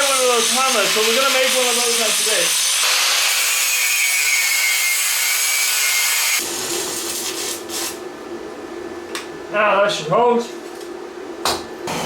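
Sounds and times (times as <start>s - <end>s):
power grinder grinding steel: 0.0s - 6.4s.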